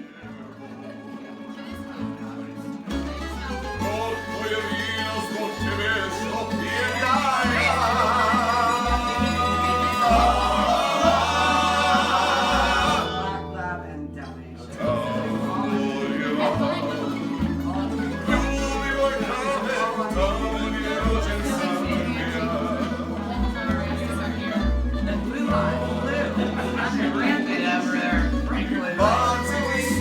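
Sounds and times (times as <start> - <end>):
plucked strings: 0.0 - 30.0
walking bass: 0.0 - 30.0
person singing: 3.9 - 13.5, 14.8 - 23.2, 25.2 - 30.0.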